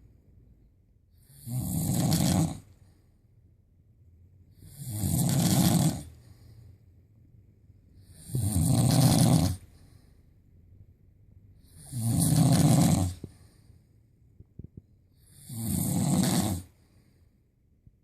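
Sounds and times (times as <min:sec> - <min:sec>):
person snoring loudly: 0:01.2 - 0:02.6, 0:04.6 - 0:06.2, 0:08.1 - 0:09.7, 0:11.7 - 0:13.3, 0:15.3 - 0:16.7.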